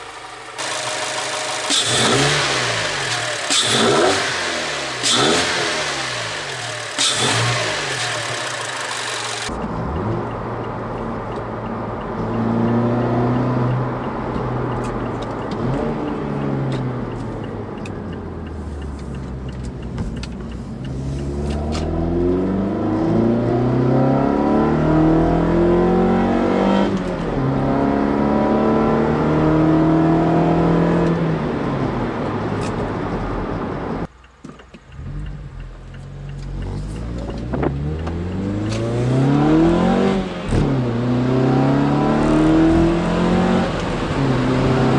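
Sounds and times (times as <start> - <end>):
car engine accelerating: 0.0 - 44.9.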